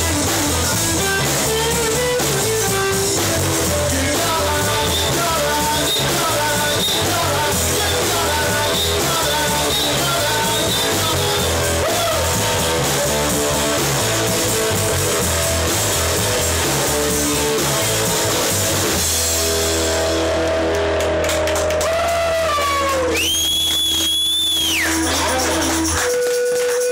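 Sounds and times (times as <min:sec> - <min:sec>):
person singing: 0:00.0 - 0:13.6
drum kit: 0:00.0 - 0:26.9
electric guitar: 0:00.0 - 0:26.9
rock music: 0:00.0 - 0:26.9.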